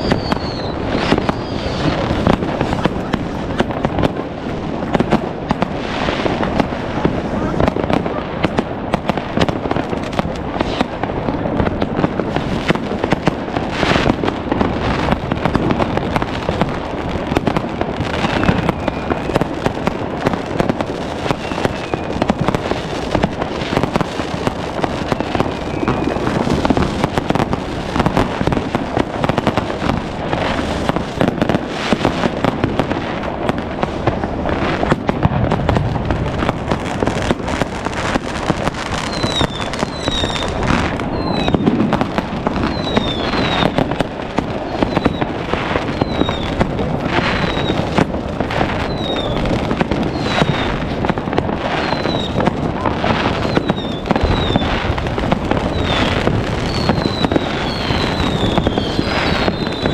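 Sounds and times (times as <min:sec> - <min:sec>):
rocket whistling: 0:00.0 - 0:03.1, 0:18.1 - 0:19.6, 0:21.2 - 0:22.4, 0:25.0 - 0:26.8, 0:38.9 - 0:41.9, 0:42.6 - 0:44.0, 0:44.6 - 0:48.0, 0:48.7 - 0:50.8, 0:51.7 - 0:54.9, 0:55.6 - 0:59.9
firecrackers banging and crackling: 0:00.0 - 0:59.9.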